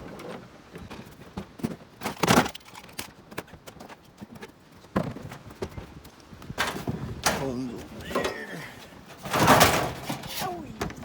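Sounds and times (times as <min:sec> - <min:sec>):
scrap clattering: 0:09.1 - 0:11.0.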